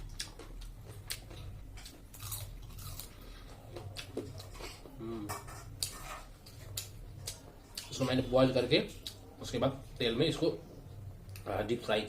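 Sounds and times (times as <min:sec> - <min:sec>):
chewing crunchy fried chicken: 0:00.0 - 0:05.0
low steady hum: 0:00.0 - 0:12.0.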